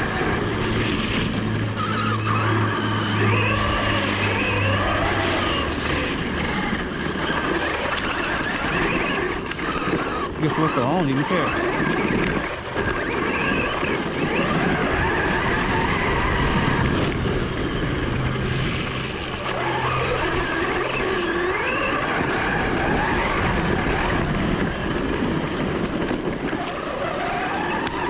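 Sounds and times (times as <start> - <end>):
electric motor whining: 0.0 - 28.0
tyres churning dirt: 0.0 - 28.0.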